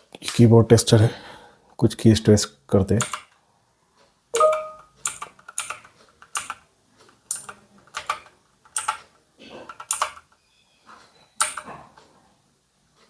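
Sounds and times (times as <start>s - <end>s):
mechanical keyboard keys clacking: 2.9s - 3.3s, 4.4s - 6.6s, 7.3s - 9.0s, 9.7s - 10.2s.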